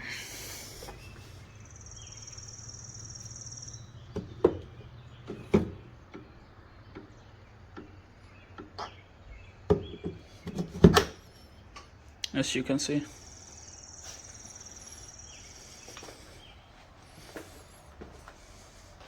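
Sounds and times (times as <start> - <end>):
sharp knocks and clicks: 4.1 - 9.0, 9.7 - 11.2.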